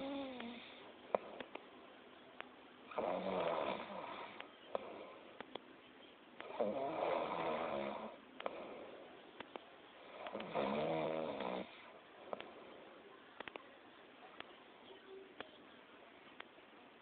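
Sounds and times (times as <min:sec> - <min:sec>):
quiet breathing: 0:00.0 - 0:01.9, 0:02.9 - 0:13.4
person snoring: 0:02.9 - 0:05.1, 0:06.5 - 0:08.7, 0:10.2 - 0:11.9.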